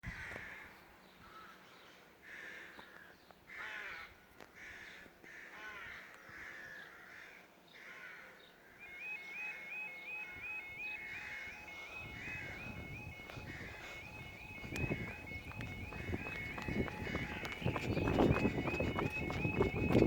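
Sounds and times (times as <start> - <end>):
crows cawing: 0.1 - 9.7, 10.3 - 18.1
level crossing warning alarm: 8.8 - 20.0.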